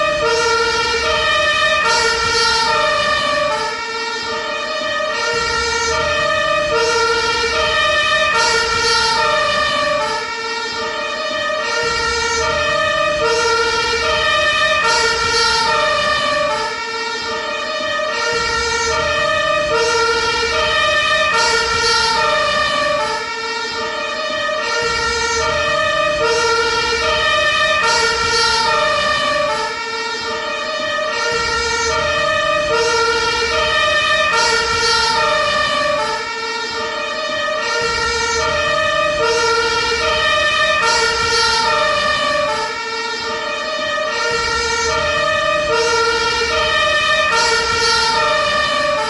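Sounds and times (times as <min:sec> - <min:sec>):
ambulance two-tone siren: 0:00.0 - 0:49.0.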